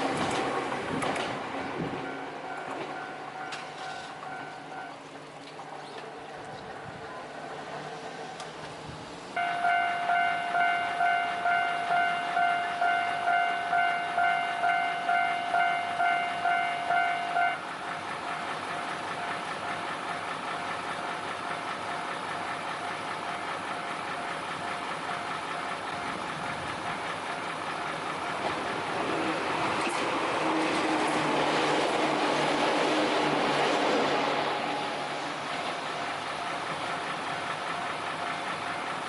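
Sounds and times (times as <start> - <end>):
approaching train running noise: 0.0 - 39.0
level-crossing warning bell: 2.0 - 5.1, 9.4 - 17.6, 22.2 - 26.2, 34.6 - 39.0.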